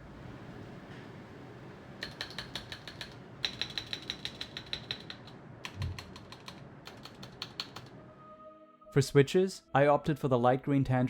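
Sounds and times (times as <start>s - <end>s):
keyboard stabilizers clicking: 2.0s - 7.9s.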